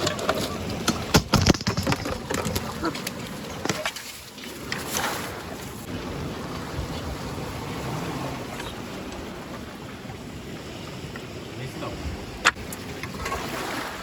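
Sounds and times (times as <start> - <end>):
water noise: 0.0 - 14.0
wind buffeting microphone: 4.6 - 14.0.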